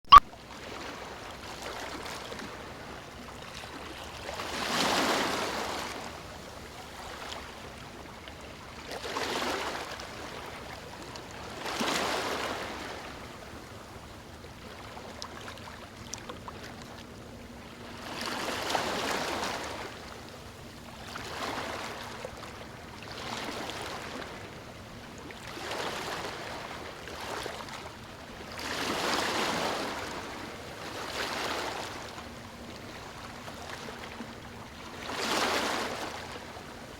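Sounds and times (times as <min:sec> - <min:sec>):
ocean waves breaking on shore: 0:00.4 - 0:36.9.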